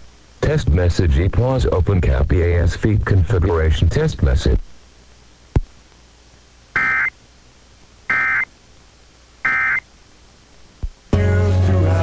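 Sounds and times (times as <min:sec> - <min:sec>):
radio music: 0:00.4 - 0:04.6, 0:11.2 - 0:12.0
buzzy two-tone digital chirps: 0:06.8 - 0:07.2, 0:08.1 - 0:08.5, 0:09.4 - 0:09.9.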